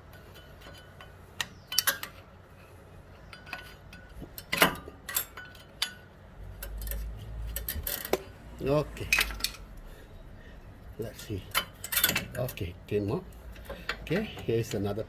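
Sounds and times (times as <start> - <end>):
metal clicks and clinks: 3.3 - 8.2, 11.5 - 12.7.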